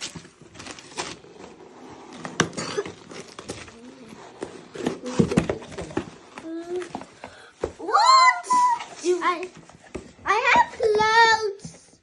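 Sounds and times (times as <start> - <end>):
gift packaging knocks and rustles: 0.0 - 7.8.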